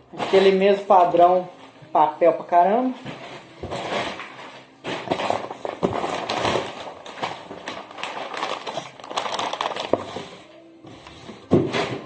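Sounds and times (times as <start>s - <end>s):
packing paper crinkling: 3.8s - 10.5s.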